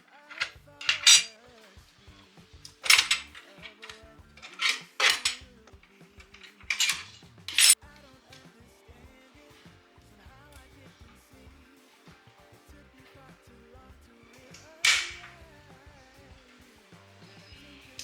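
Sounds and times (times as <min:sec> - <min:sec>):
hard parts clattering: 0:00.0 - 0:09.0, 0:09.6 - 0:18.0
quiet background music: 0:00.0 - 0:18.0.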